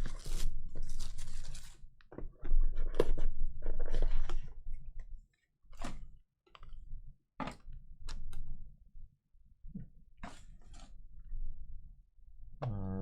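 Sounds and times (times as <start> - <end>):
cardboard and plastic packaging rustling: 0.0 - 4.7.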